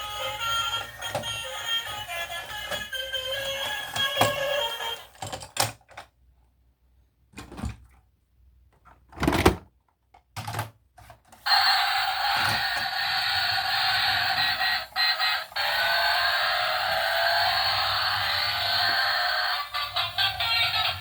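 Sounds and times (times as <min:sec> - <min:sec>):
toys and packaging handled: 0:09.8 - 0:20.8.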